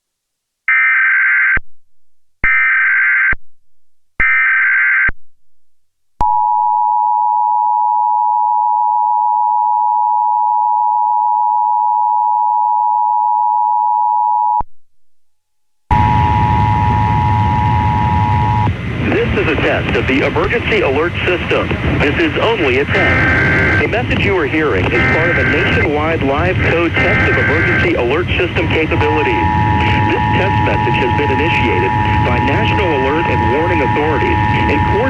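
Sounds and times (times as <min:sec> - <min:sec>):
hissy humming broadcast feed: 0:15.9 - 0:35.0
buzzy data burst warbles: 0:22.0 - 0:35.0
two-tone attention signal: 0:22.9 - 0:23.9, 0:24.9 - 0:25.9, 0:26.6 - 0:35.0.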